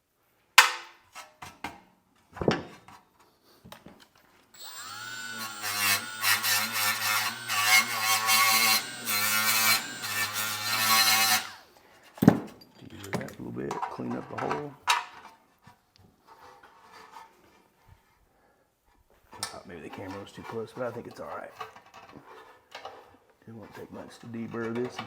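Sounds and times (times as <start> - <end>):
drill motor whine: 4.6 - 11.6
gritty metal cutting: 4.6 - 11.7.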